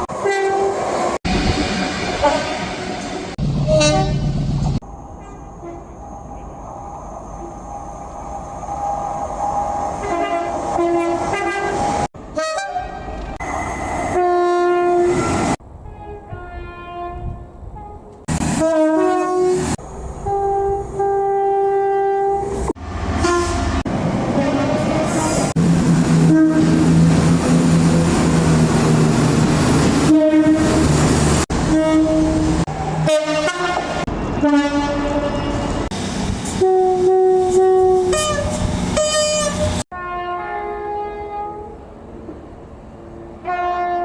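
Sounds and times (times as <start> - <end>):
train passing with loud rush: 0.0 - 44.0
train horn blasts: 0.2 - 0.8, 2.1 - 4.3, 10.0 - 11.8, 12.4 - 13.5, 14.1 - 22.6, 23.2 - 23.8, 26.2 - 27.0, 30.0 - 30.9, 31.6 - 35.8, 36.6 - 41.8, 43.4 - 44.0.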